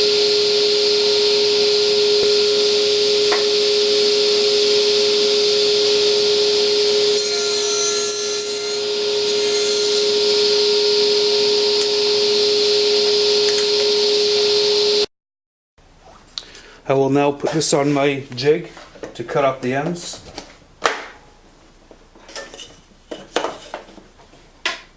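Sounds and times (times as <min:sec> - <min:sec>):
table saw whining: 0:00.0 - 0:15.1
saw blade cutting wood: 0:07.1 - 0:10.8.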